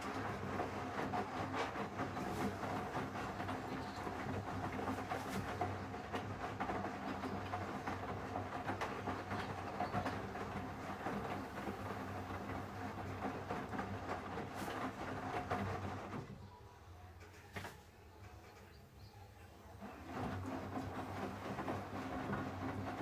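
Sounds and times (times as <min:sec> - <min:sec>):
washing machine motor hum: 0:00.0 - 0:16.2, 0:19.5 - 0:23.0.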